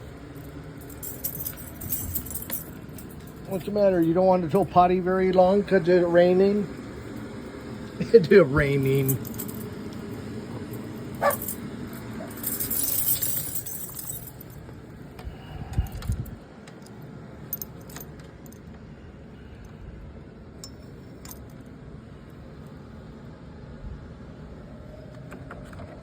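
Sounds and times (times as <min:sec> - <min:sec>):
small metal pieces jingling: 0:00.3 - 0:04.1, 0:09.0 - 0:09.8, 0:10.7 - 0:14.6.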